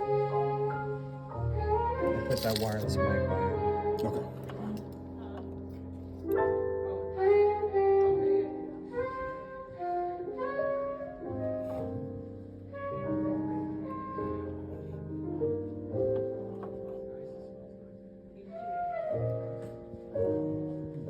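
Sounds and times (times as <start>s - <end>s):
saxophone melody: 7.1s - 11.6s.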